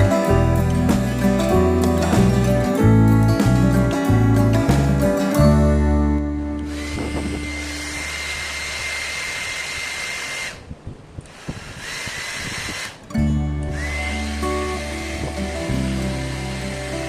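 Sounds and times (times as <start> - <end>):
background music: 0.0 - 7.0, 13.2 - 17.0
hair dryer whining: 6.6 - 13.0, 13.7 - 17.0.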